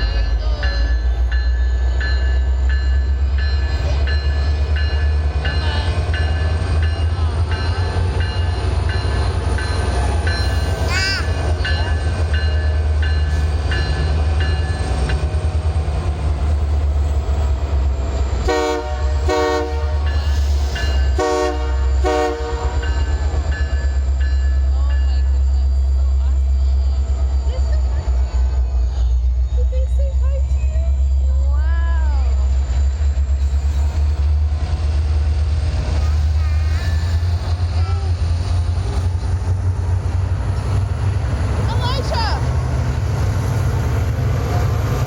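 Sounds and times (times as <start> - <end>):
freight train rumbling by: 0.0 - 45.0
locomotive horn blasts: 18.4 - 20.3, 21.2 - 22.9.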